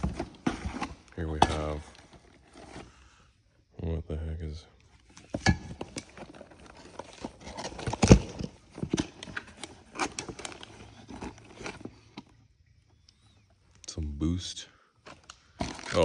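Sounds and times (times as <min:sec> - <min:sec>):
plastic packaging crinkling: 0:15.6 - 0:16.0.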